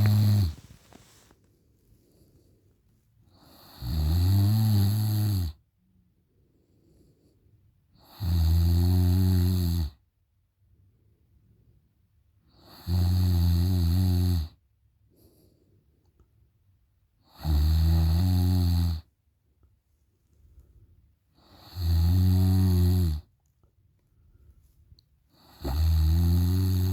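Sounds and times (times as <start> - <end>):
woman snoring loudly: 0.0 - 0.9, 3.5 - 5.5, 8.1 - 9.9, 12.7 - 14.5, 17.3 - 19.0, 21.5 - 23.2, 25.4 - 26.9
quiet breathing: 0.0 - 3.7, 6.2 - 8.0, 15.0 - 16.4, 24.0 - 25.8.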